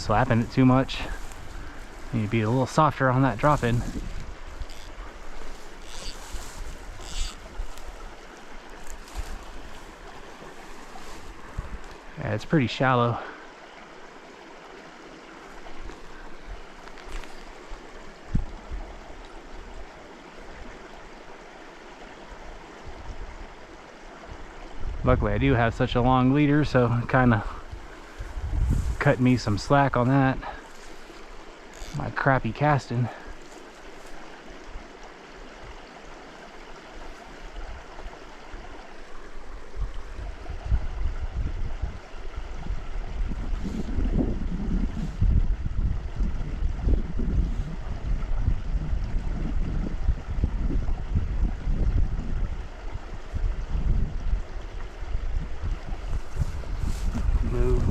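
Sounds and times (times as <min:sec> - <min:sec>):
wind buffeting microphone: 0:00.0 - 0:12.1, 0:24.7 - 0:30.6, 0:39.2 - 0:57.9
creek water running: 0:00.0 - 0:57.9.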